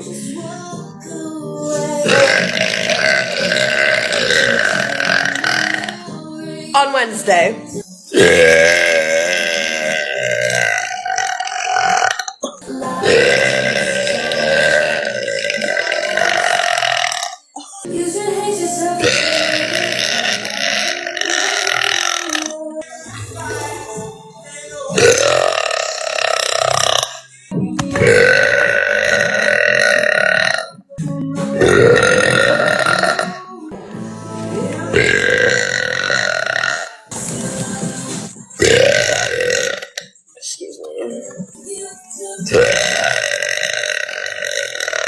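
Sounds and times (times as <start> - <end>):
woman burping loudly: 2.0 - 6.0, 8.1 - 17.9, 19.0 - 24.1, 24.9 - 27.3, 28.0 - 30.8, 31.6 - 33.5, 34.9 - 37.1, 38.6 - 40.2, 42.5 - 45.0.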